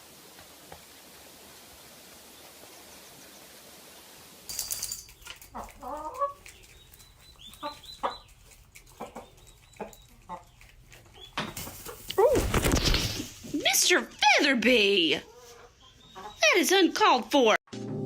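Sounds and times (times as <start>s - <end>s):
chickens clucking: 5.2s - 14.2s, 15.1s - 16.8s.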